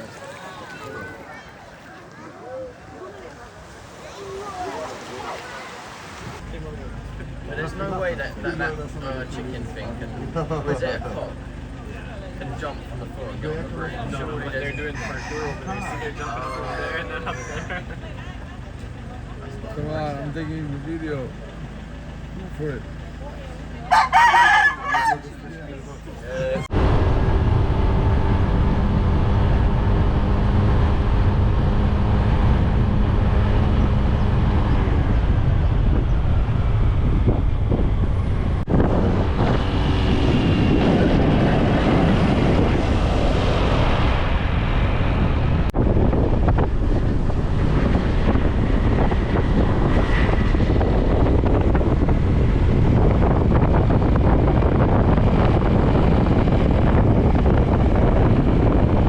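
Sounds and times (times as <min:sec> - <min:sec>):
vehicle engine running: 0:06.3 - 0:59.0
wind buffeting microphone: 0:22.9 - 0:59.0.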